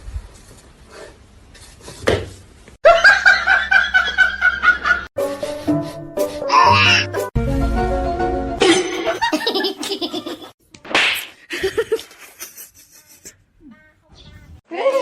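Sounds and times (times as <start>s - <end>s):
background music: 5.2s - 9.2s
people laughing: 8.9s - 10.6s, 11.5s - 13.5s.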